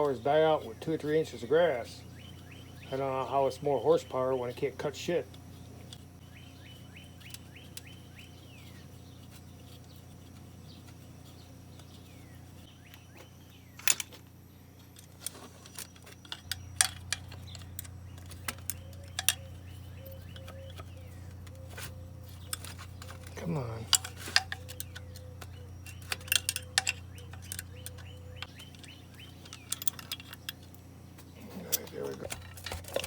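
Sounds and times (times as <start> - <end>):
steady low hum: 0.0 - 33.0
hand tools clinking on metal parts: 14.8 - 33.0
faint bird chirps: 16.0 - 32.1.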